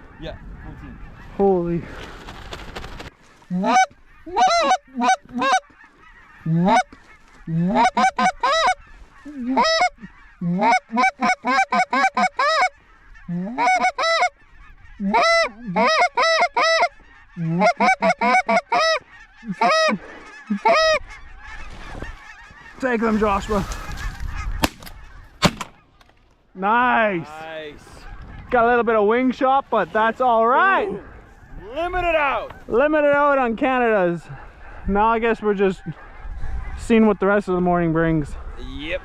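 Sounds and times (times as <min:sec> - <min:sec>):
goose honking: 0:03.5 - 0:26.1, 0:30.2 - 0:37.6.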